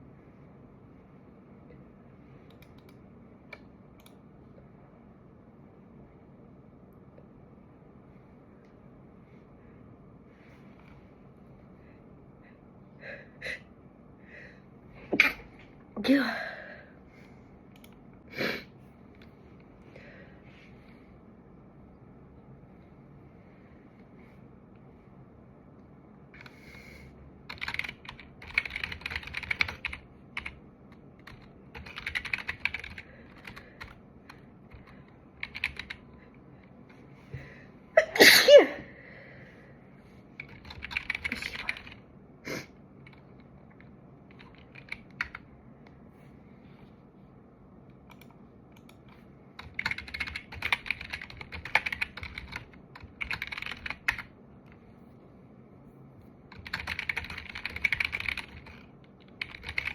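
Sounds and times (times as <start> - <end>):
computer keyboard typing: 27.5 - 36.1, 40.4 - 42.0, 44.3 - 45.5, 48.1 - 54.8, 56.5 - 59.9
person sneezing: 38.0 - 38.9.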